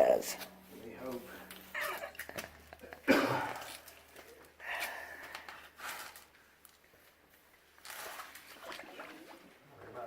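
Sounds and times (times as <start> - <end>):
water splashing from wading: 7.8 - 9.6.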